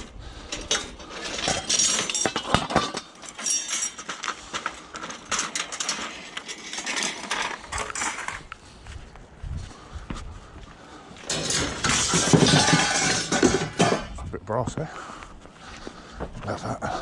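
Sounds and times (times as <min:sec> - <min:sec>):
scrap metal clanking: 0:00.4 - 0:08.5, 0:11.2 - 0:14.3.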